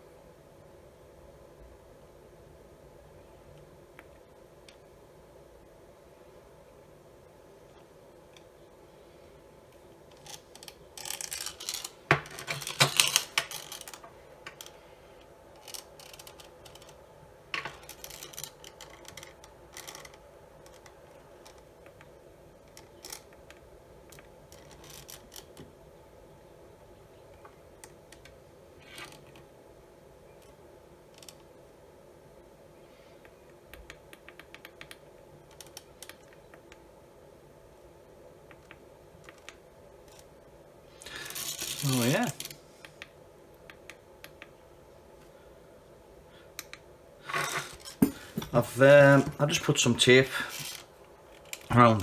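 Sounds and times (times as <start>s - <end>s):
plastic rustling and clattering: 10.3s - 14.7s.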